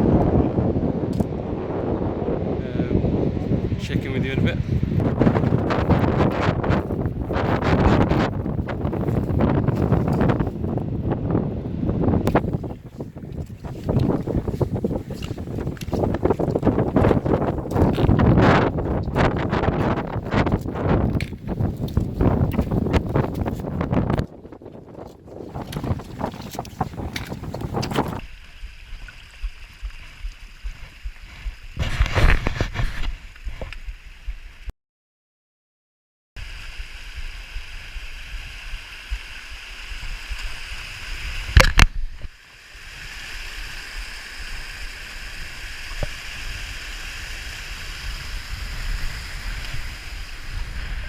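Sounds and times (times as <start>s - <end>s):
wind buffeting microphone: 0.0s - 28.8s, 44.6s - 51.0s.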